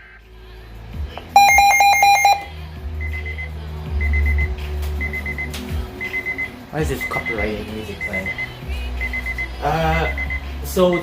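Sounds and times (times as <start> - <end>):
electronic alarm beeping: 1.3 - 2.5, 7.0 - 11.0.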